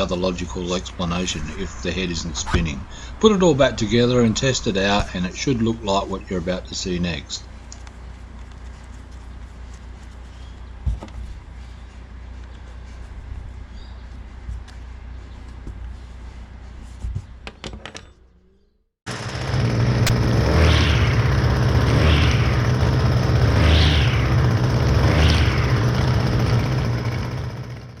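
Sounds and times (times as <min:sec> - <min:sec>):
string trimmer engine revving: 0:19.1 - 0:28.0.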